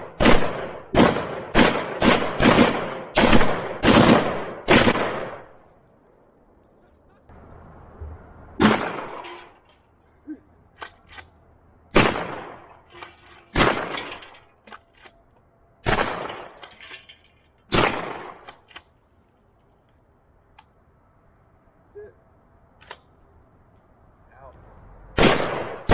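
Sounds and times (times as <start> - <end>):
gunshots with echo: 0.0 - 5.6, 8.6 - 9.3, 12.0 - 12.8, 13.6 - 14.4, 15.8 - 16.6, 17.7 - 18.5, 25.2 - 25.9.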